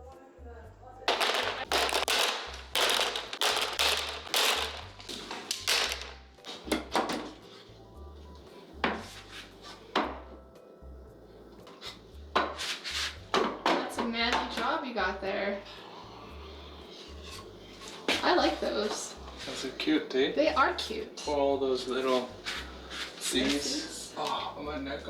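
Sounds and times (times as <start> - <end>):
faint background music: 0.0 - 25.0
short scraping strokes: 12.6 - 13.2.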